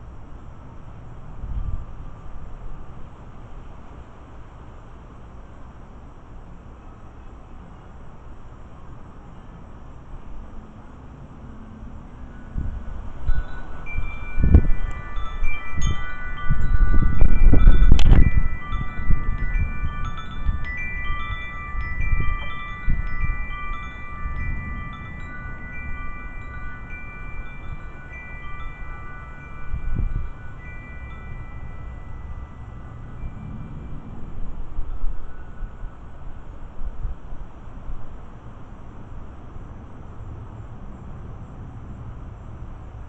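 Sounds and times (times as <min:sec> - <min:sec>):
deep wind gusts: 0:10.4 - 0:43.0
wind chimes ringing: 0:12.1 - 0:36.8.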